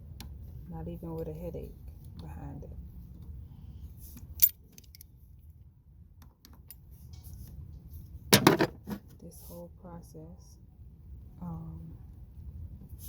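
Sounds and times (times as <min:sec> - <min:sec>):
low steady rumble: 0:00.0 - 0:13.0.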